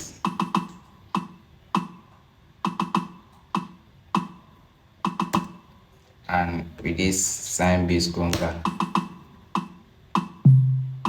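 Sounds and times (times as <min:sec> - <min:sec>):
programmed percussion knocking hits: 0:00.0 - 0:04.4, 0:05.0 - 0:05.6, 0:08.6 - 0:11.0.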